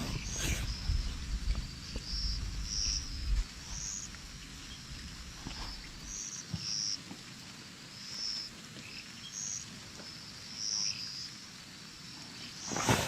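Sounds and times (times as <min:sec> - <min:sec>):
rustle or scrape: 0:00.0 - 0:01.0, 0:12.4 - 0:13.0
outdoor background noise: 0:00.0 - 0:13.0.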